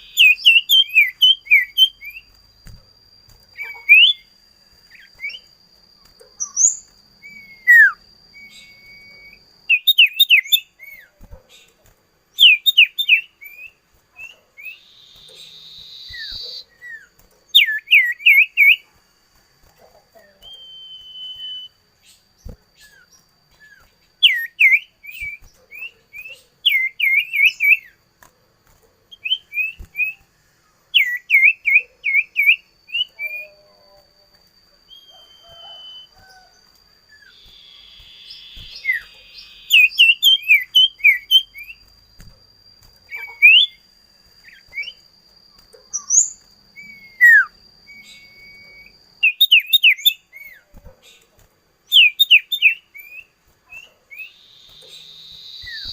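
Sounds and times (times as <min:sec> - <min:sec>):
songbird whistling: 0:00.0 - 0:02.8, 0:03.5 - 0:05.5, 0:06.4 - 0:11.1, 0:12.4 - 0:18.8, 0:20.2 - 0:22.2, 0:22.8 - 0:28.0, 0:34.9 - 0:41.9, 0:43.0 - 0:43.8, 0:44.4 - 0:45.0, 0:45.8 - 0:50.6, 0:51.9 - 0:55.9.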